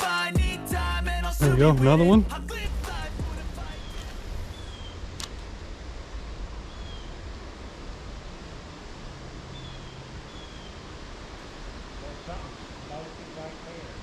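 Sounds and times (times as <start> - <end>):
high falling bird chirps: 3.6 - 5.1, 6.7 - 7.2, 9.5 - 10.9.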